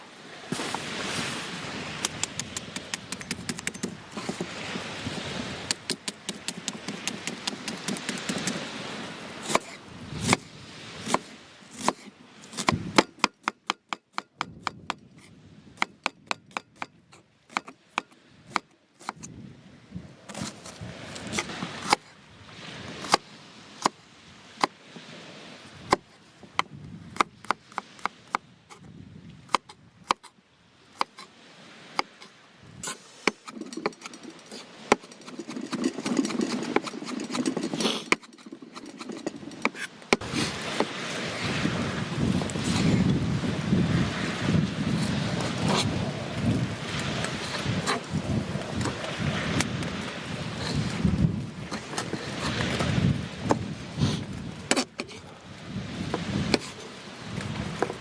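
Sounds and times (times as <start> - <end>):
hand tool striking: 5.7 - 8.6, 32.8 - 40.2.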